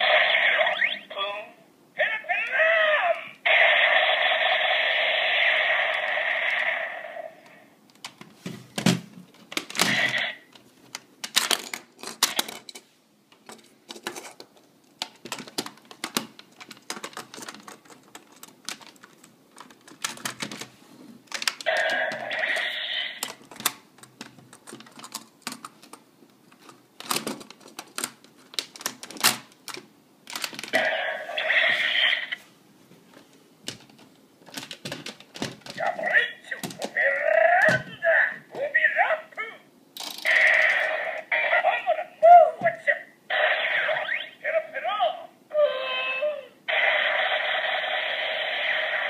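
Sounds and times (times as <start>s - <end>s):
electronic toy sound effects: 0.0s - 1.4s, 2.0s - 7.6s, 9.9s - 10.4s, 21.7s - 23.2s, 30.8s - 32.4s, 40.2s - 49.0s.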